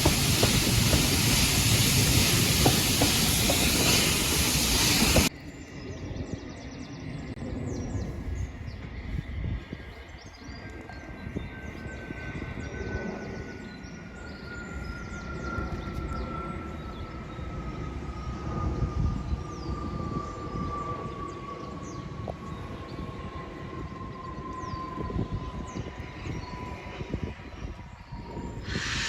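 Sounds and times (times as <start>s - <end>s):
steam train rumbling: 0.0s - 5.3s, 28.6s - 29.0s.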